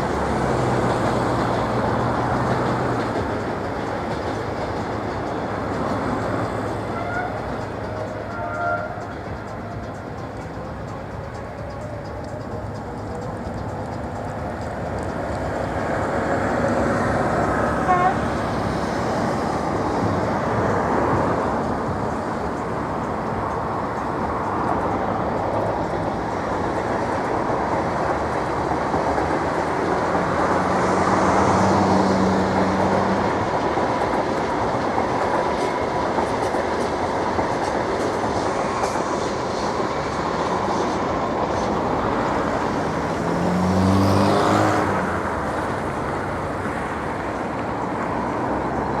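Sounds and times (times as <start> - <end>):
passing vehicle motor: 42.0 - 46.7.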